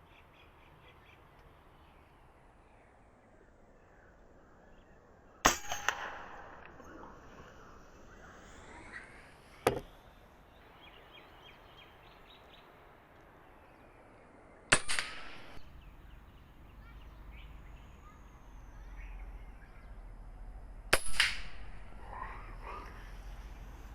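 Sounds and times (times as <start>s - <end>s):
air gun firing: 5.5s - 6.8s, 14.7s - 15.6s, 20.9s - 21.8s.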